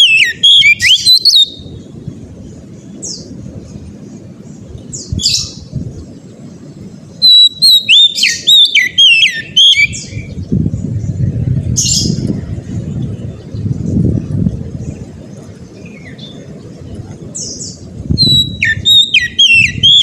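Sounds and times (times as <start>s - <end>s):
bird singing whistled notes: 0.0s - 1.8s, 4.9s - 5.7s, 7.2s - 11.2s, 15.8s - 16.5s, 17.4s - 20.0s
low rumble: 10.0s - 18.6s.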